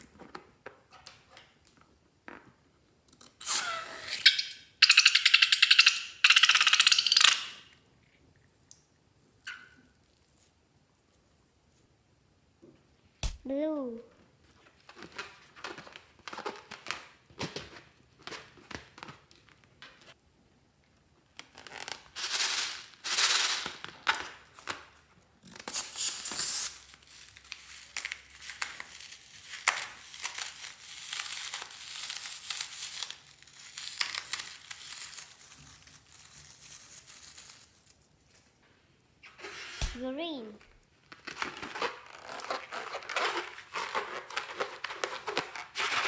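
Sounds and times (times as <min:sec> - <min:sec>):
balloons and slime crinkling: 0:14.4 - 0:20.2, 0:21.2 - 0:38.7, 0:39.9 - 0:46.0.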